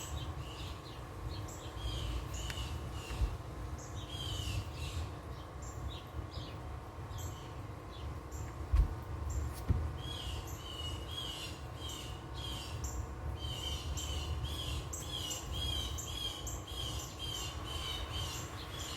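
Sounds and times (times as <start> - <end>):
bird chirping: 0.0 - 18.9
low thumps: 8.6 - 10.0.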